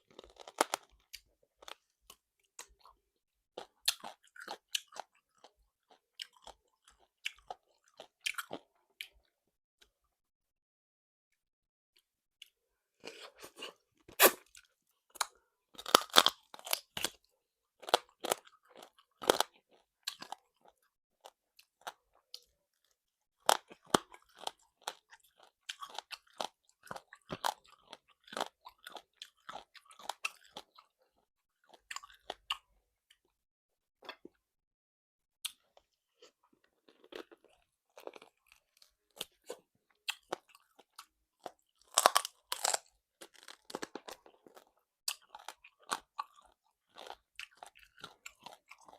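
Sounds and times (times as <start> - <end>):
person biting and chewing food: 0.0 - 1.9, 13.0 - 22.5, 35.4 - 48.9.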